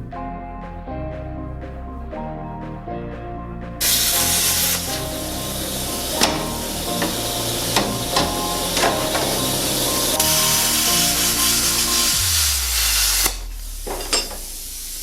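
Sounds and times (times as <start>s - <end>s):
plasma cutter hissing: 3.8s - 15.0s.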